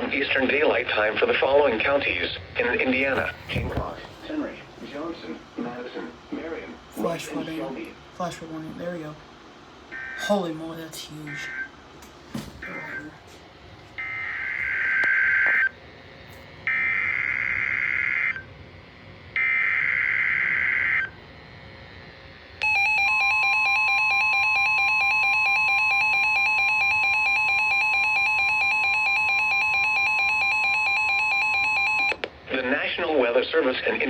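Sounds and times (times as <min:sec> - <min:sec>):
steady attention tone: 0:09.9 - 0:11.8, 0:12.6 - 0:13.2, 0:22.6 - 0:32.2.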